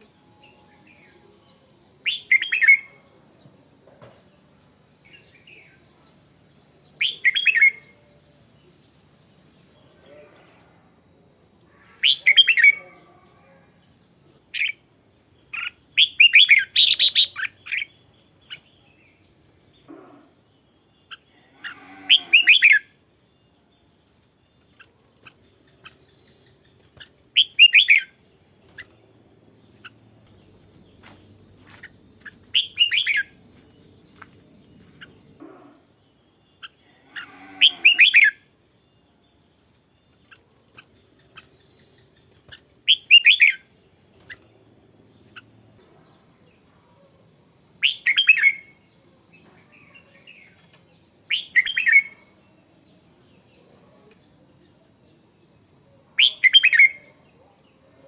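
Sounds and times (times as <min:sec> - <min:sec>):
bird singing warbled phrases: 0:07.0 - 0:07.9, 0:12.0 - 0:12.8, 0:15.5 - 0:19.2, 0:24.7 - 0:28.9, 0:31.8 - 0:33.4, 0:40.2 - 0:44.4, 0:51.3 - 0:52.2.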